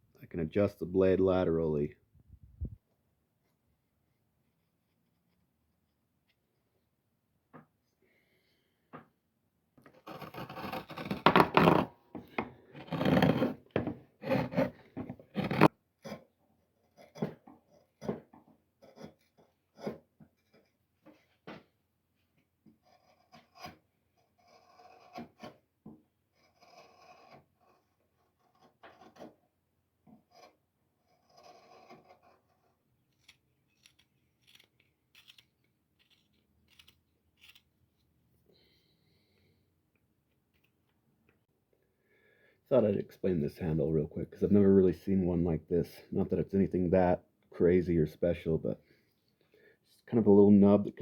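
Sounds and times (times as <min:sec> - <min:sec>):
hand tools scraping wood: 0:09.9 - 0:16.3, 0:30.1 - 0:35.4.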